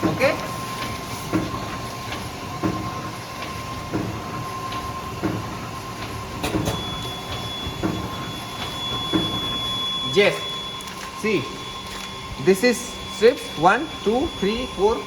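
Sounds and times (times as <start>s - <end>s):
packing machine clunking: 0.0s - 11.2s
machine whine: 0.0s - 15.0s
mechanical hum: 0.0s - 15.0s
higher whine: 6.8s - 15.0s.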